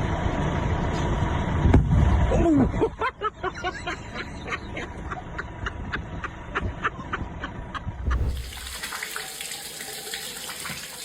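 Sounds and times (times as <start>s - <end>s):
low rumble: 7.9s - 8.9s
milk gushing out: 8.0s - 11.0s.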